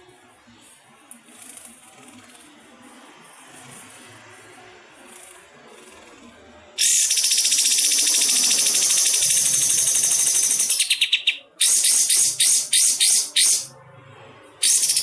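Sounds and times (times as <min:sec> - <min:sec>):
songbird rattling trill: 0:06.8 - 0:13.7, 0:14.6 - 0:15.0.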